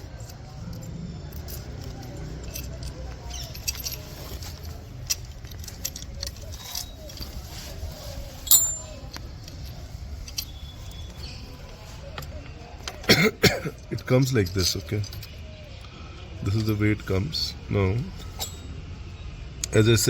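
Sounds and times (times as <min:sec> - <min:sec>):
metal parts clinking: 0:00.1 - 0:07.8, 0:08.4 - 0:11.2, 0:12.2 - 0:15.4, 0:16.4 - 0:17.4, 0:18.0 - 0:18.8.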